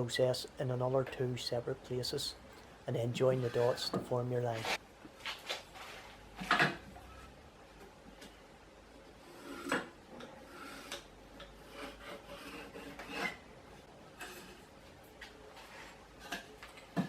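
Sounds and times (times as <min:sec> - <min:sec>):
pencil scratching on wood: 0:10.4 - 0:13.4.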